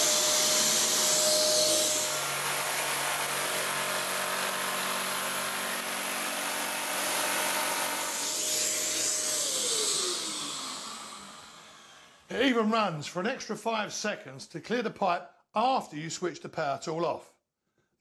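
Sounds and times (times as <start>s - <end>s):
electric power tool working wood: 0.0s - 12.3s
motor winding down: 0.0s - 12.3s
vacuum cleaner running: 0.0s - 12.3s.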